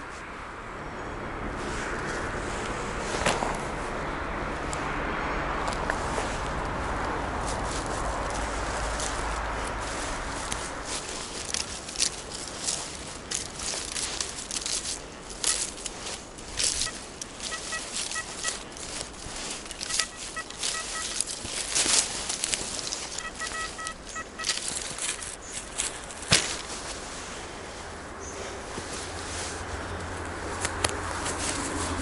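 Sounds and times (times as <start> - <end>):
rustling in leaf litter: 1.4 - 32.0
metal detector beeping: 12.8 - 25.6.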